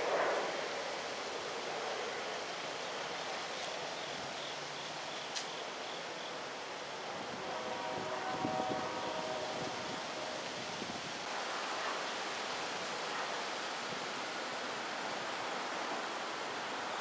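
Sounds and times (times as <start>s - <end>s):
outdoor rushing noise: 0.0s - 2.3s.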